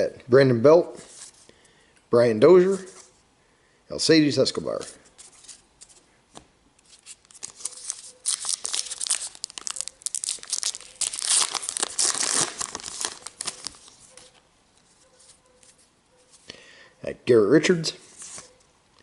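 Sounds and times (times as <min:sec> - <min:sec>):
wrapper tearing and crinkling: 0:06.8 - 0:14.2.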